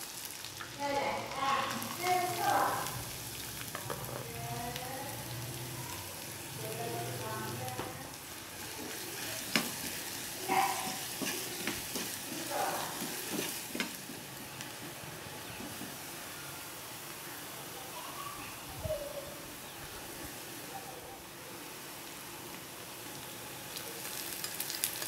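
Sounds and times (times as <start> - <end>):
seasoning sizzling in hot oil: 0.0 - 20.7, 21.3 - 25.0
spoon scraping and knocking pan: 3.7 - 4.3, 8.7 - 16.0.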